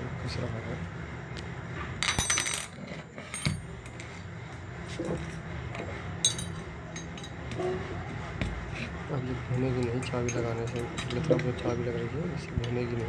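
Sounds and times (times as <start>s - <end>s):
metal tools clinking on metal: 2.0s - 4.3s, 6.2s - 7.4s, 9.6s - 12.1s.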